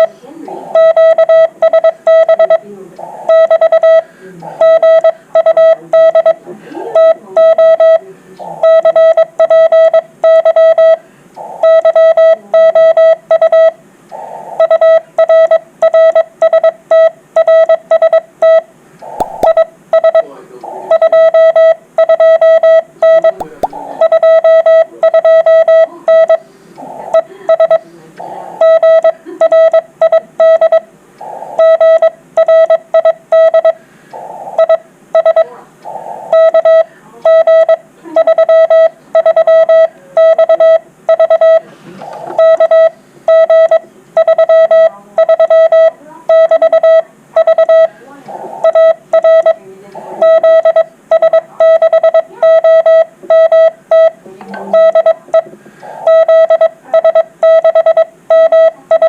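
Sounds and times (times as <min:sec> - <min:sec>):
faint radio band noise: 0:00.0 - 0:59.0
morse code beeps: 0:00.7 - 0:02.6, 0:03.3 - 0:06.4, 0:07.0 - 0:08.0, 0:08.6 - 0:13.8, 0:14.6 - 0:20.3, 0:20.9 - 0:47.9, 0:48.6 - 0:49.6, 0:50.2 - 0:59.0
weak radio signals: 0:02.4 - 0:04.9, 0:08.0 - 0:09.0, 0:11.4 - 0:12.8, 0:14.1 - 0:14.8, 0:19.0 - 0:21.8, 0:23.2 - 0:25.0, 0:26.4 - 0:29.4, 0:31.1 - 0:32.2, 0:34.1 - 0:34.9, 0:35.6 - 0:36.8, 0:39.0 - 0:44.0, 0:47.5 - 0:57.3.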